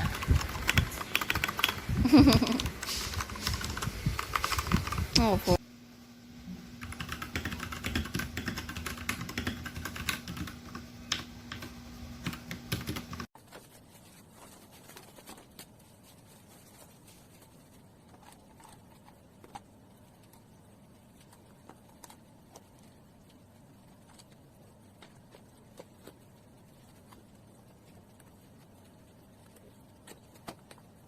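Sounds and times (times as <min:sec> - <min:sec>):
fast typing on mechanical keyboard: 0:00.0 - 0:05.6, 0:06.8 - 0:13.3.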